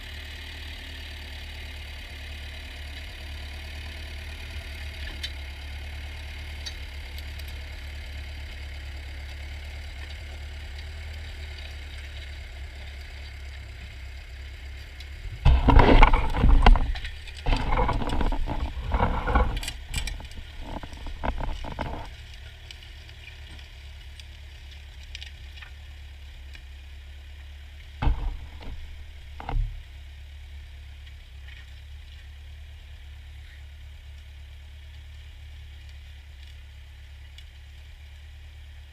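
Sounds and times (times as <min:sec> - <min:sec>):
tractor engine idling: 0:00.0 - 0:38.9
loud irregular clattering: 0:15.4 - 0:22.2, 0:28.0 - 0:29.9.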